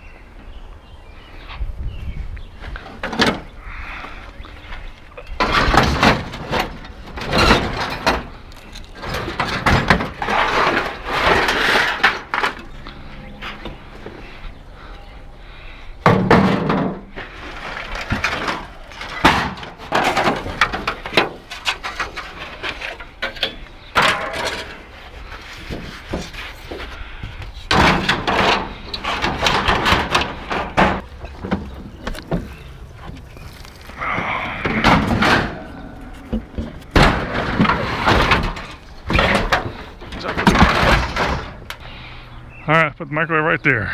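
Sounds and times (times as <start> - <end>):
scrap metal clanking into truck bed: 5.3 - 12.7, 16.0 - 24.9, 27.7 - 32.5, 34.6 - 41.8.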